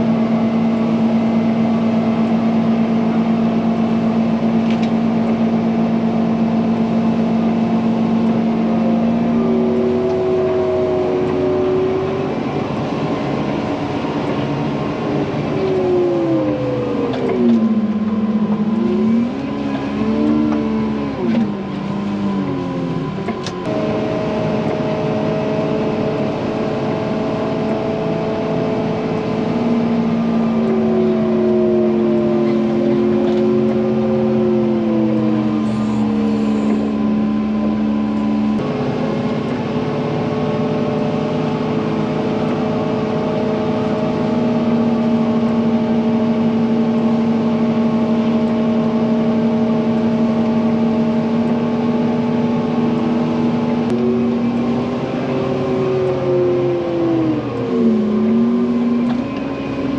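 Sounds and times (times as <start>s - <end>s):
diesel engine under load: 0.0s - 59.9s.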